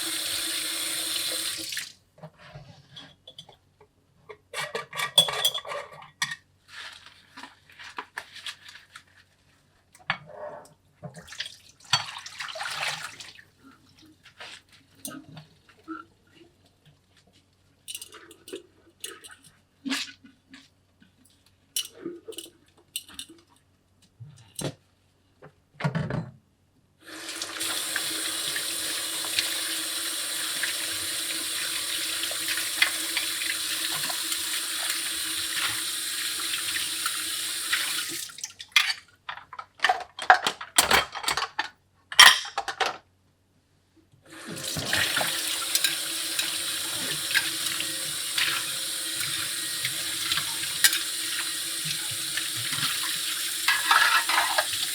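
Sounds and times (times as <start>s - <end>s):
tap running into sink: 44.6s - 54.9s.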